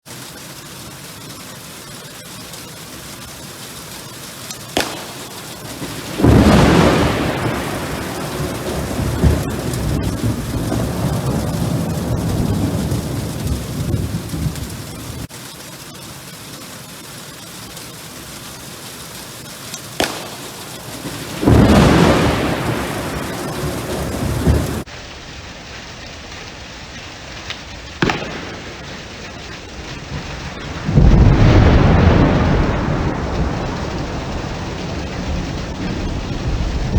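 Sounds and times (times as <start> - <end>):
steady rain: 0.0 - 36.9
thunder rumbling: 0.2 - 15.6, 16.5 - 36.9
lightning strike pop: 4.5 - 15.3, 19.7 - 25.2, 27.3 - 36.9.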